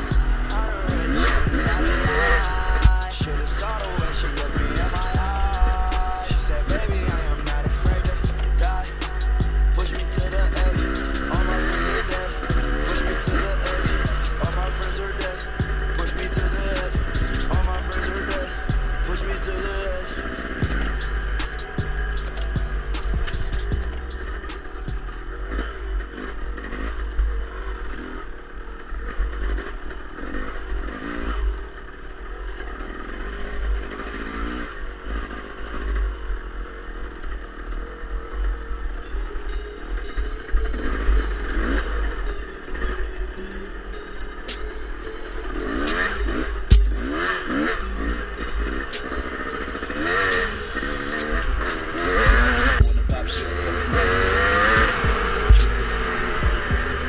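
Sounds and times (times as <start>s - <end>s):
low rumble: 0.0s - 20.0s, 20.6s - 25.5s, 52.3s - 57.0s
dirt bike engine revving: 0.0s - 57.0s
music with deep bass drum hits: 0.1s - 19.2s, 20.6s - 25.2s, 46.7s - 47.1s, 52.2s - 57.0s.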